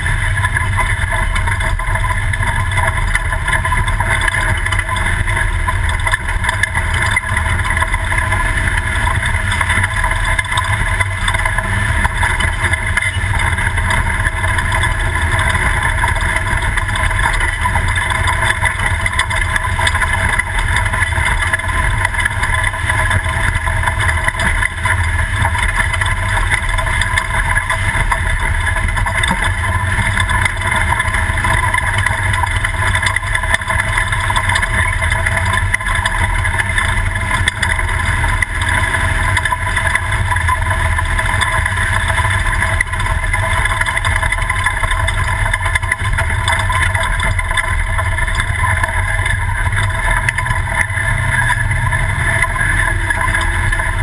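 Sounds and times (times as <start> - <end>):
truck engine and road noise: 47.7 - 54.0.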